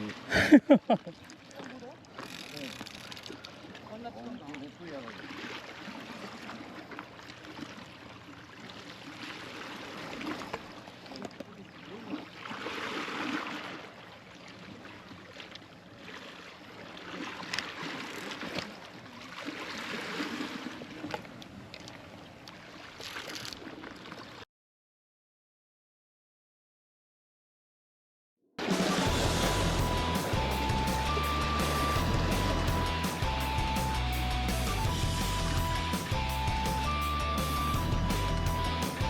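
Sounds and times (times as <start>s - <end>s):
sea water washing over rocks: 28.6s - 33.5s.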